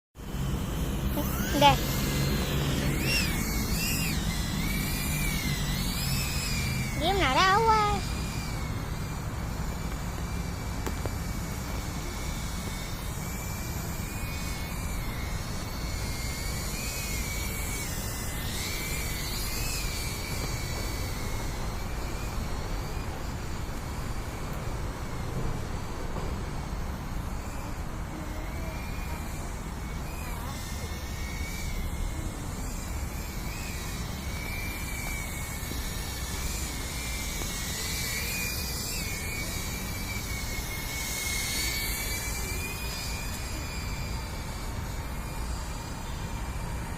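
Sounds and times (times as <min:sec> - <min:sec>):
drone propellers whining: 0:00.2 - 0:46.9.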